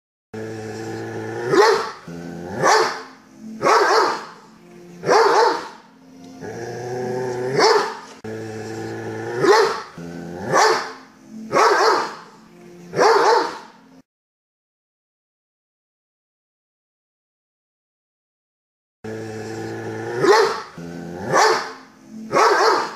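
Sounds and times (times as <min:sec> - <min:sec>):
dog growling: 0:00.4 - 0:12.3, 0:19.1 - 0:22.9
dog barking deeply: 0:01.4 - 0:04.4, 0:05.0 - 0:05.8, 0:07.4 - 0:08.0, 0:09.2 - 0:12.2, 0:13.0 - 0:13.7, 0:20.1 - 0:22.9.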